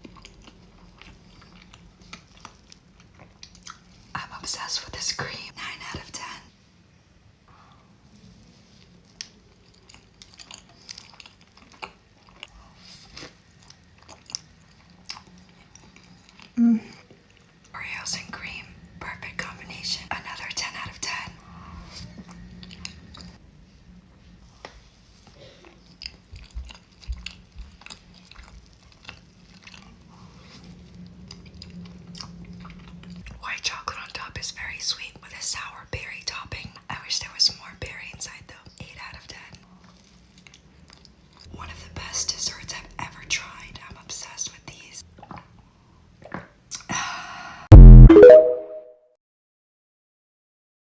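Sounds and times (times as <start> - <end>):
crunchy chewing of food: 0.0 - 4.1, 8.2 - 17.6, 25.1 - 33.4, 39.6 - 41.5.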